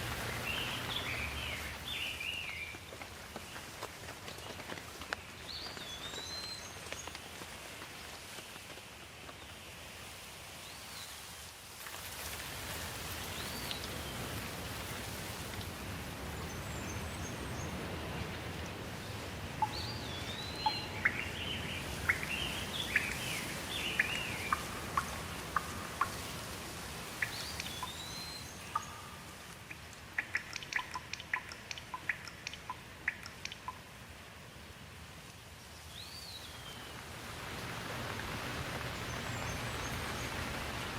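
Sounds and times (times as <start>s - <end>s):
steady rain hiss: 0.0s - 40.9s
birds whistling calls: 19.6s - 26.0s, 27.2s - 29.1s
short sharp ticking calls: 27.2s - 33.8s.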